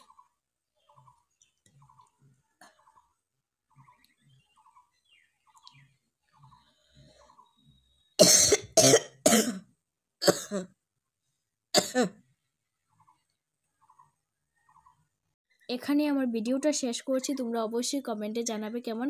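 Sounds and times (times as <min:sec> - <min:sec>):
person coughing hard: 0:08.2 - 0:10.7, 0:11.8 - 0:12.2.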